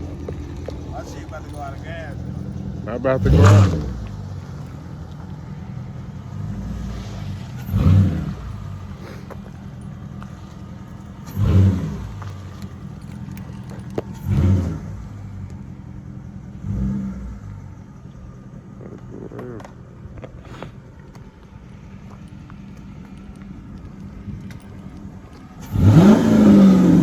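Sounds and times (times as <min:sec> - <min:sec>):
car engine idling and revving: 0:00.0 - 0:27.0.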